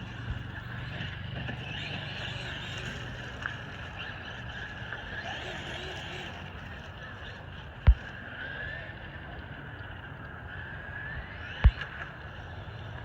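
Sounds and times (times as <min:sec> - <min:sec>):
electric toy truck motor running: 0:00.0 - 0:08.9.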